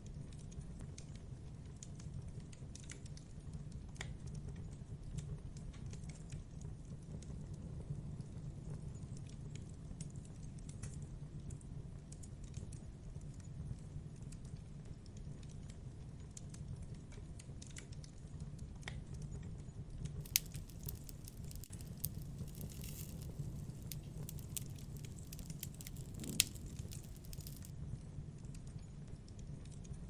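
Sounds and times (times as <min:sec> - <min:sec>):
campfire crackling and popping: 0:20.2 - 0:27.7.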